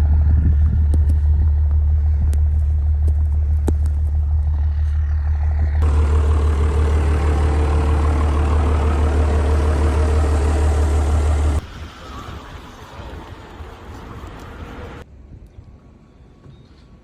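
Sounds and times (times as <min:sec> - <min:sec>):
vehicle engine rumbling: 0:00.0 - 0:15.1.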